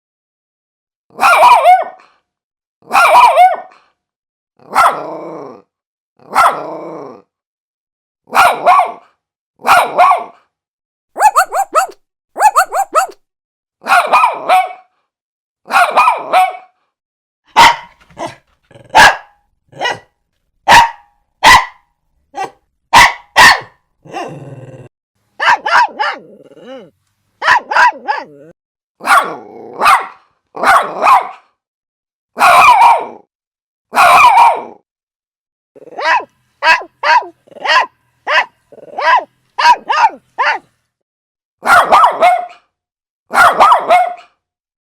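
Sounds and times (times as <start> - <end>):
small dog barking: 1.1 - 2.0, 2.8 - 3.8, 4.6 - 5.1, 6.2 - 6.7, 8.3 - 10.4, 11.2 - 13.2, 13.8 - 14.9, 15.7 - 16.8, 17.5 - 20.1, 20.7 - 24.3, 25.4 - 31.5, 32.4 - 33.2, 33.9 - 34.8, 35.8 - 40.7, 41.6 - 42.7, 43.3 - 44.4
dog yapping sharply: 1.2 - 2.0, 2.9 - 3.8, 11.2 - 13.2, 17.5 - 18.4, 19.0 - 20.0, 20.7 - 21.8, 22.4 - 23.8, 25.4 - 26.2, 27.4 - 28.3, 29.0 - 31.4, 32.4 - 33.1, 33.9 - 34.7, 36.0 - 40.7, 41.6 - 42.6, 43.3 - 44.3.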